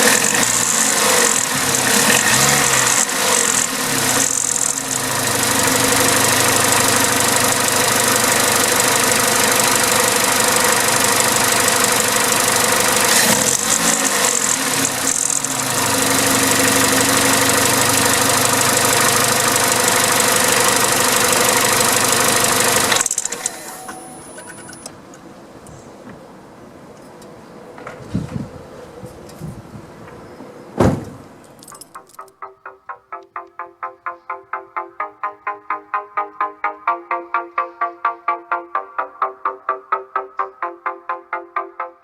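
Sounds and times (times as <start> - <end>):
car engine running with rattle: 0.0 - 24.9.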